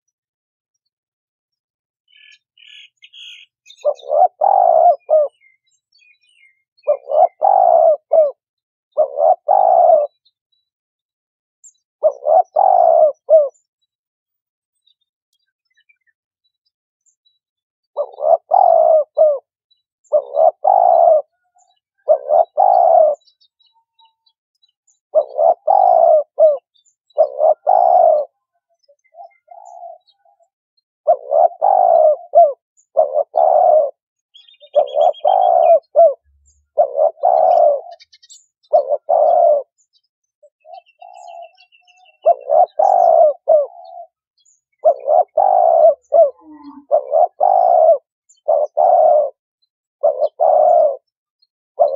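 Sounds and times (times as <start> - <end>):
dove cooing: 2.6 - 5.6, 6.3 - 10.3, 12.0 - 13.6, 17.9 - 23.4, 25.1 - 30.5, 31.1 - 39.8, 40.5 - 49.4, 50.0 - 51.1.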